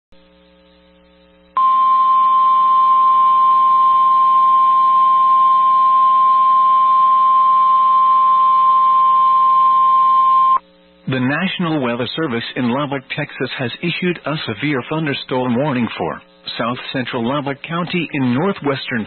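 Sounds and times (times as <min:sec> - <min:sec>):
faint low hum: 0:00.1 - 0:19.0
loud steady alarm tone: 0:01.6 - 0:10.6.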